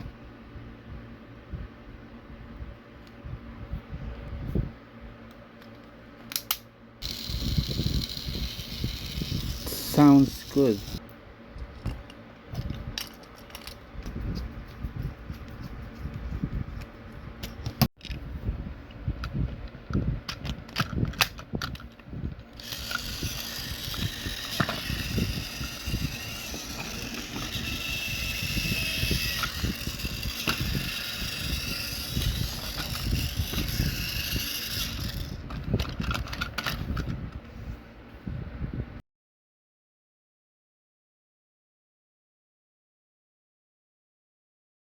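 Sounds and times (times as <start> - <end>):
toy train motor whirring: 7.0 - 11.0, 22.5 - 37.1.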